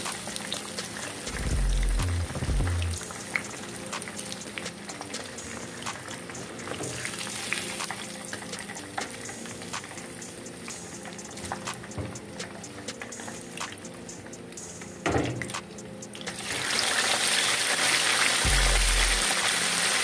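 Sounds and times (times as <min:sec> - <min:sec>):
low rumble: 0:01.3 - 0:03.0, 0:18.5 - 0:19.2
fish frying in hot oil: 0:16.2 - 0:20.0.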